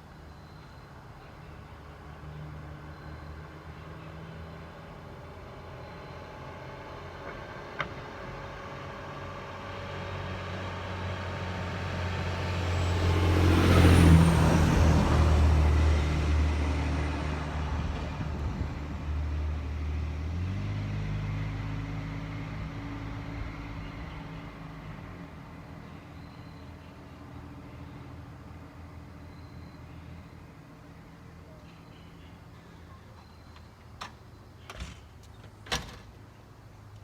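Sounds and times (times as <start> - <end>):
motor vehicle passing: 6.3 - 33.1.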